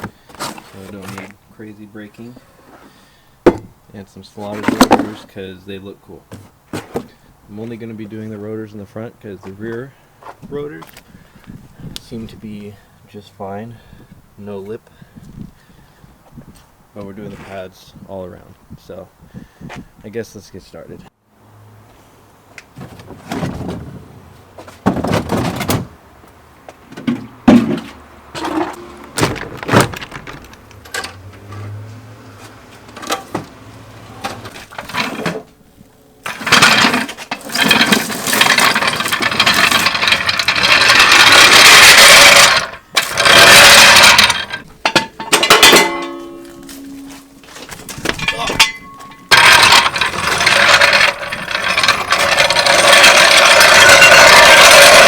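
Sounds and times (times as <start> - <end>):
tools clanking: 0.0 - 1.4, 4.4 - 5.3, 26.9 - 35.6, 36.2 - 55.0
rattling power tool: 36.2 - 46.4, 48.2 - 55.0.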